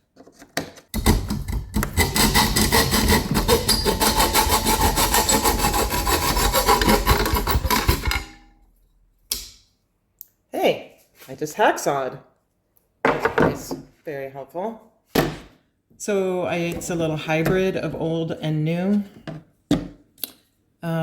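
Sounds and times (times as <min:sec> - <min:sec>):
hacksaw cutting: 0:01.0 - 0:08.5.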